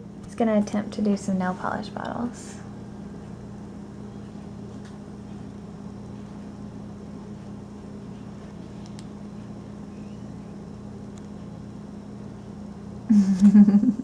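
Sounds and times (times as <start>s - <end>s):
low mechanical hum: 0.0s - 14.0s.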